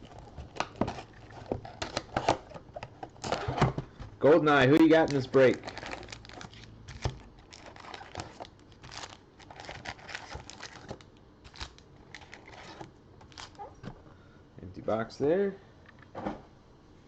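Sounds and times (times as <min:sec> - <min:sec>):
card packs crinkling: 0:00.0 - 0:04.0, 0:04.6 - 0:13.9.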